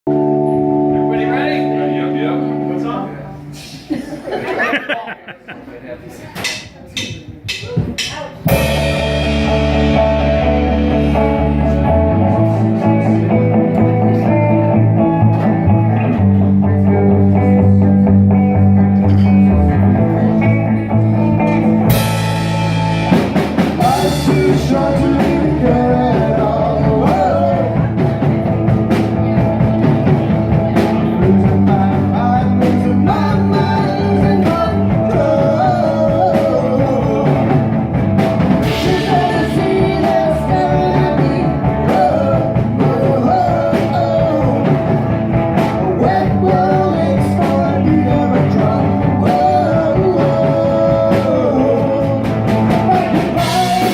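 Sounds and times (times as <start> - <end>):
live rock band playing: 0.1 - 4.8, 7.5 - 53.9
lead voice singing: 7.8 - 53.9.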